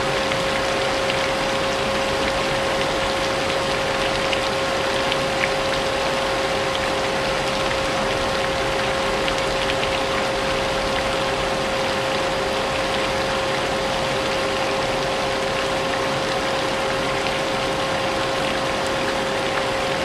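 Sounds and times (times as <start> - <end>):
vacuum cleaner running: 0.0 - 2.5
rain pattering: 0.0 - 20.0.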